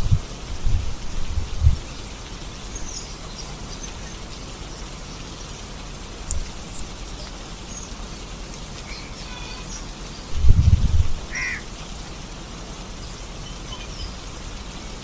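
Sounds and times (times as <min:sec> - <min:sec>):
steady rain: 0:00.0 - 0:15.0
bird calling: 0:06.4 - 0:10.4, 0:11.3 - 0:11.8.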